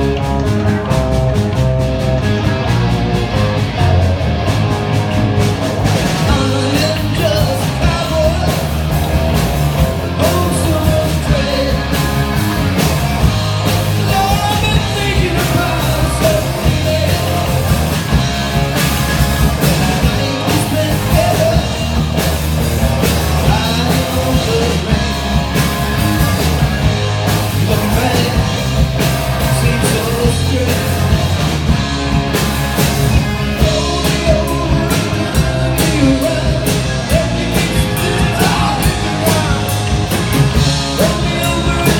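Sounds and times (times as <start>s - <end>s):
instrumental rock music: 0.0s - 41.9s.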